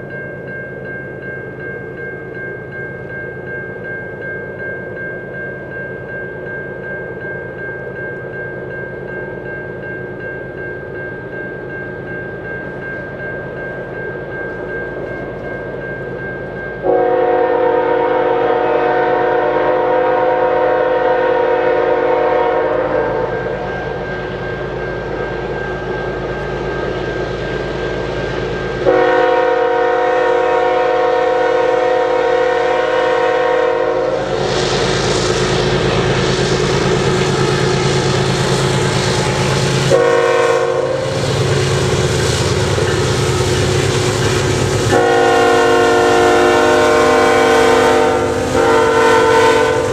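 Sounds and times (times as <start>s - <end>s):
train rumble and rail noise: 0.0s - 49.9s
locomotive air horn blasts: 16.8s - 23.7s, 28.8s - 34.5s, 38.8s - 41.6s, 44.8s - 49.9s.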